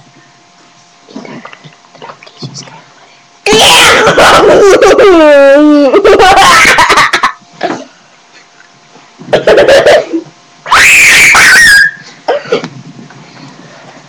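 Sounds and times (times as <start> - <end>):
girl shrieking and yelling: 3.5 - 6.9, 10.7 - 12.0.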